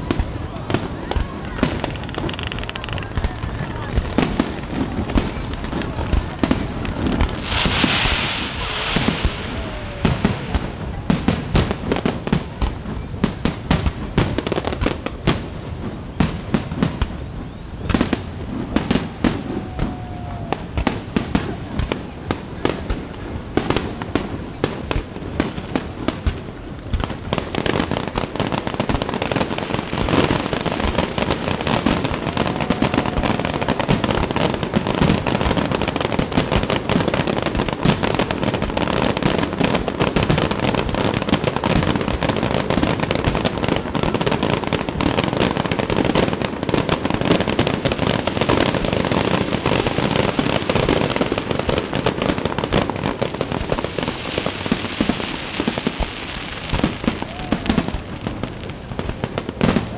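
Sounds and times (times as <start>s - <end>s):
fireworks bangs and crackling: 0.0s - 59.9s.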